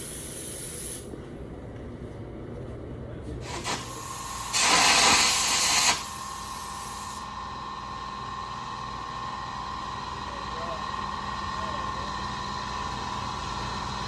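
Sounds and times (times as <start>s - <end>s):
welding arc hissing: 0.0s - 1.1s, 3.4s - 7.3s.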